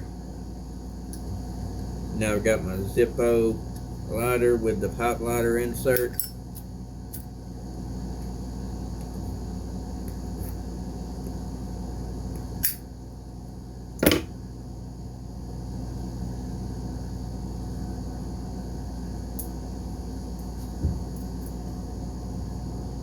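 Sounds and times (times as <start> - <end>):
steady low hum: 0.0 - 23.0
lighter snap being struck: 12.6 - 12.8.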